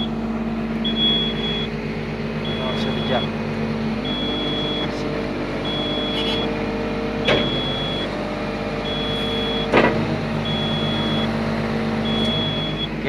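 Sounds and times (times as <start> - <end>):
excavator diesel engine running: 0.0 - 13.0
high-pitched warning buzzer beeping: 0.8 - 1.7, 2.4 - 3.4, 4.0 - 5.0, 5.6 - 6.6, 7.2 - 8.2, 8.8 - 9.8, 10.4 - 11.4, 12.0 - 13.0
sharp metallic clunk: 7.2 - 7.8, 9.6 - 10.0.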